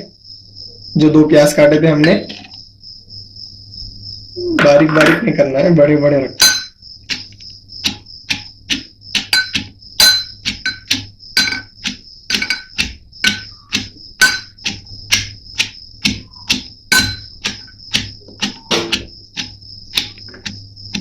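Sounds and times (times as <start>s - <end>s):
pestle pounding in a mortar: 7.9s - 21.0s.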